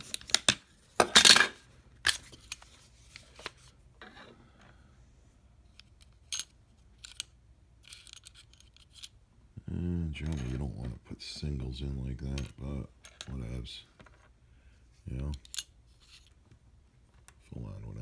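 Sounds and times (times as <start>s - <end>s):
plastic parts clicking: 5.7s - 9.1s.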